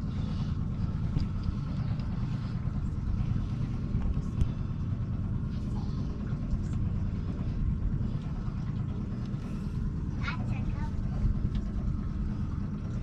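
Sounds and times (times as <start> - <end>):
outboard motor rumbling: 0.0 - 13.0.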